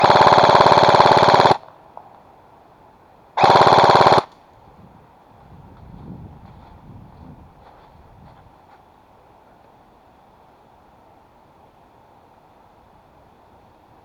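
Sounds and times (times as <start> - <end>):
airsoft gun firing bursts: 0.0 - 1.7, 3.4 - 4.3.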